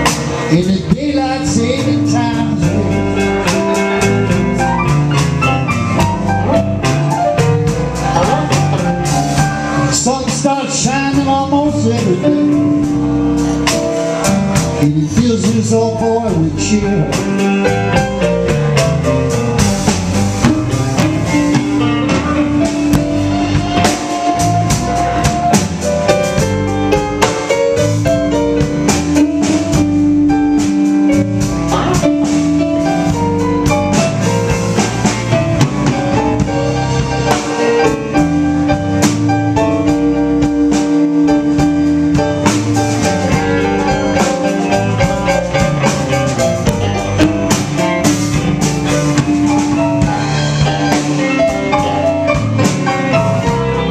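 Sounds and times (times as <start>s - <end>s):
live blues band playing: 0.0s - 53.9s.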